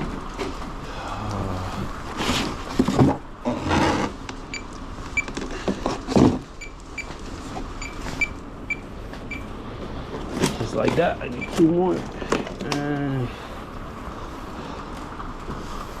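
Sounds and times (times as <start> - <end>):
cardboard boxes thudding and scraping: 5.6 - 6.5.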